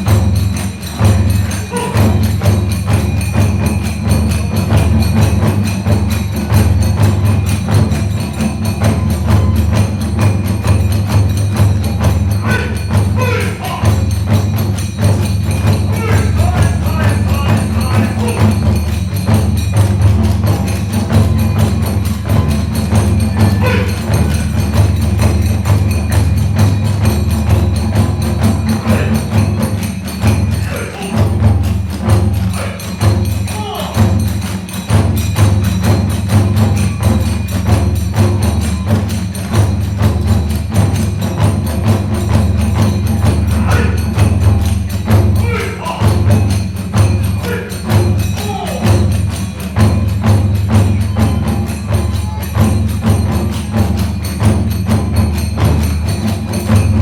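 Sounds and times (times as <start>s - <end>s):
hand cymbals clashing: 0.0s - 57.0s
taiko drums: 0.0s - 57.0s
bamboo flute melody: 23.3s - 25.0s.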